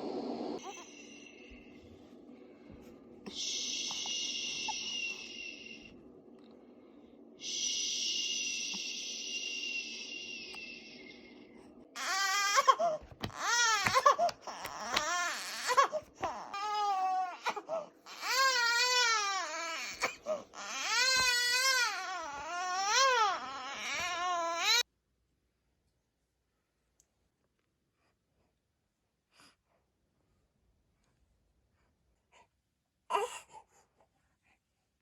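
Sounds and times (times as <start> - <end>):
baby crying: 12.0 - 24.8.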